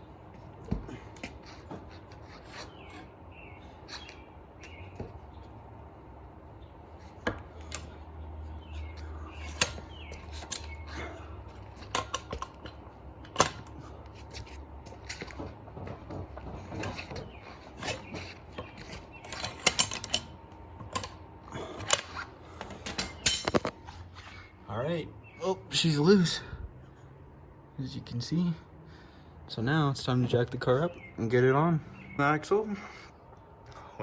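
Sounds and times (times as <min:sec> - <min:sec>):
hand tools clicking on metal bolt: 0:17.8 - 0:21.2.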